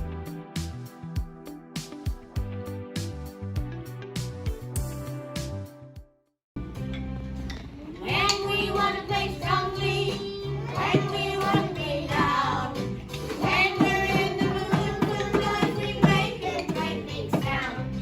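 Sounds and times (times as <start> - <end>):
child singing: 8.0 - 12.8, 13.4 - 18.0.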